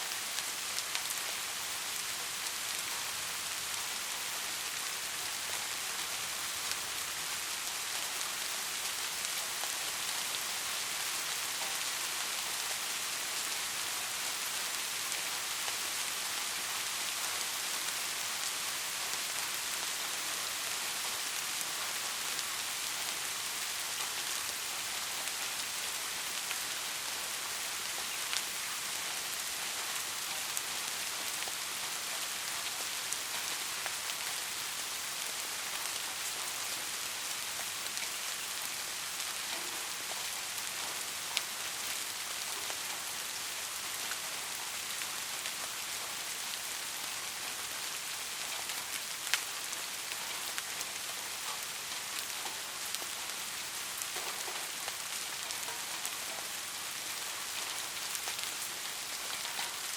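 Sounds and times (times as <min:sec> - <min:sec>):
steady soft rain hiss: 0:00.0 - 0:59.9
raindrops ticking on a surface: 0:00.1 - 0:59.9.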